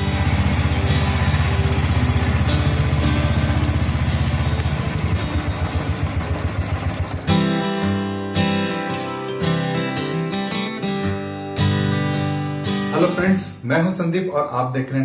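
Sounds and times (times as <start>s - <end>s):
motorcycle engine running: 0.0s - 7.9s
guitar music: 0.0s - 13.6s.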